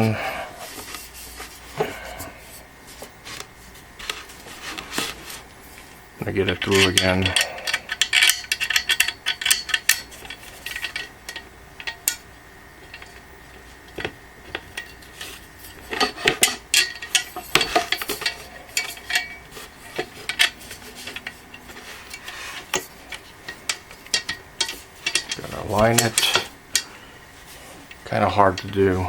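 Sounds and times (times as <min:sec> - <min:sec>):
metal screw clinking and scraping: 0:06.4 - 0:12.2, 0:13.9 - 0:26.9.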